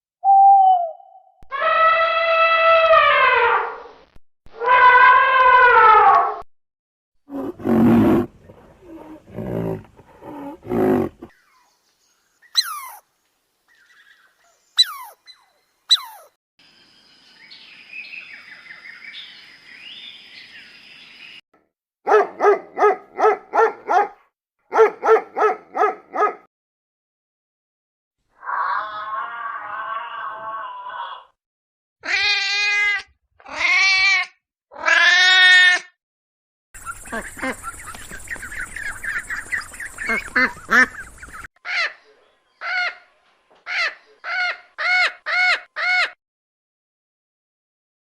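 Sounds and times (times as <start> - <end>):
short falling whistles: 0.2 - 1.3
long pitched animal calls: 7.3 - 11.3, 28.4 - 31.3
low animal roars: 7.3 - 11.3
pulsed animal calls: 7.3 - 11.3.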